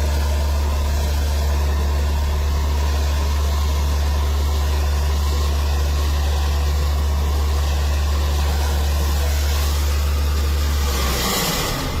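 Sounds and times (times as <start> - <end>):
engine humming: 0.0 - 12.0
hiss: 7.2 - 12.0.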